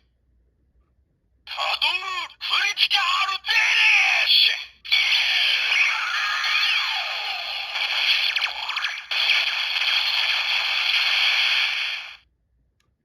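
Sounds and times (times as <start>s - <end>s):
electronic toy sound effect: 4.9s - 12.2s.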